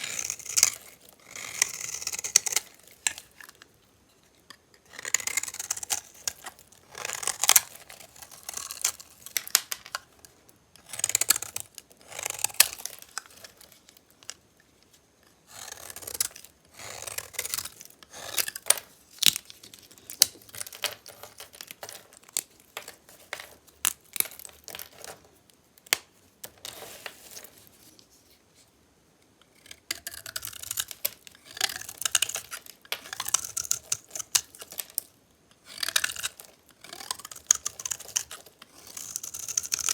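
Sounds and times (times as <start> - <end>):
blade slicing through soap: 35.7 - 39.9.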